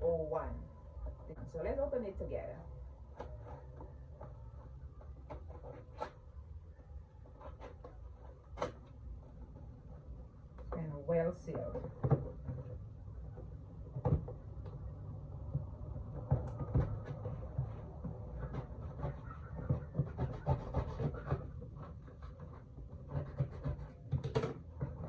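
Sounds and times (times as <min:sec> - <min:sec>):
scratching at packing tape: 0:03.1 - 0:06.3, 0:07.2 - 0:09.6, 0:16.1 - 0:25.0
tape peeling: 0:03.1 - 0:06.4.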